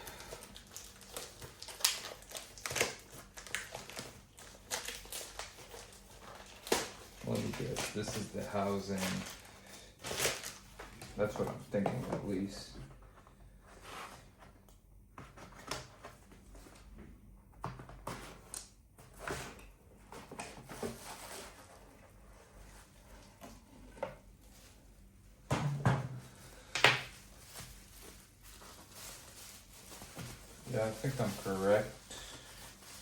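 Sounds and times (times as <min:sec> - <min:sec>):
packaging rustling: 0:00.0 - 0:12.5, 0:26.3 - 0:33.0.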